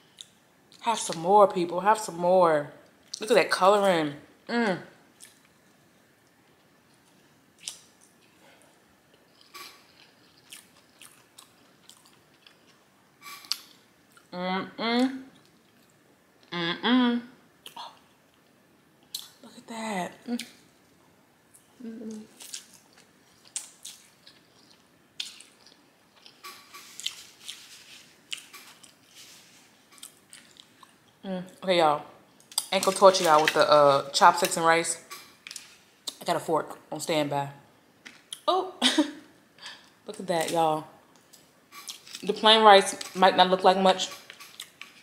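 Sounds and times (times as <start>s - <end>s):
person chewing food: 6.5s - 14.3s, 21.5s - 31.2s, 41.1s - 42.2s.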